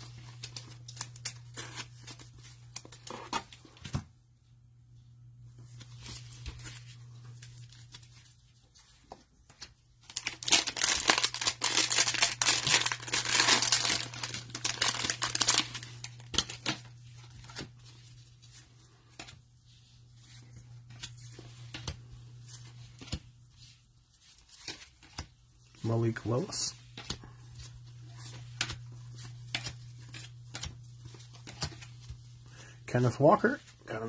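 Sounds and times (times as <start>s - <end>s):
cellophane tearing and crinkling: 0.0s - 3.5s, 10.0s - 17.7s
cards rustling and clicking: 0.0s - 4.0s, 5.7s - 19.4s, 20.2s - 32.4s.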